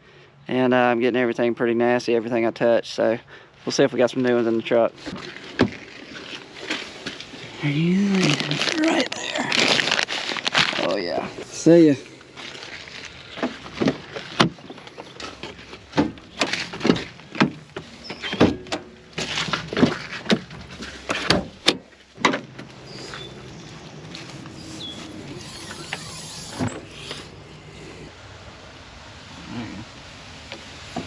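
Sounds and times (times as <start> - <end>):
sharp knocks and clunks: 13.4 - 23.3
faint squeaks: 22.7 - 28.2.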